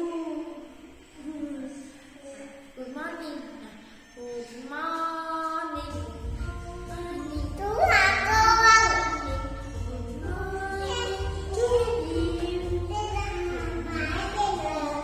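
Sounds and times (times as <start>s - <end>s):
child singing: 0.0s - 15.0s
music backing track with low beat: 5.0s - 15.0s.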